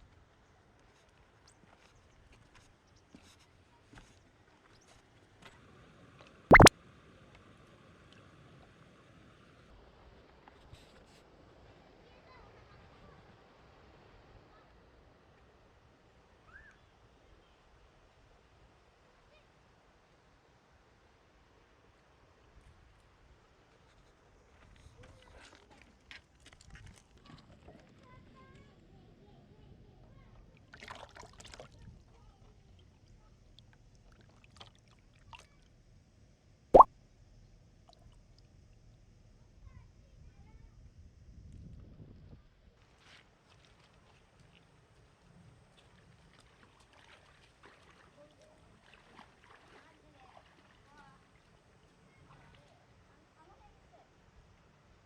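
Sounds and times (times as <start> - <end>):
short plop: 6.5 - 6.7.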